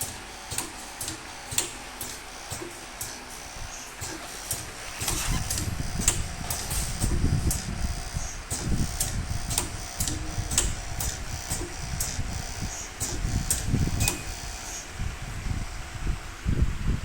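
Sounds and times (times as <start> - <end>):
pneumatic cylinder clicks and puffs: 0.0 - 14.9
low machine rumble: 3.4 - 17.0.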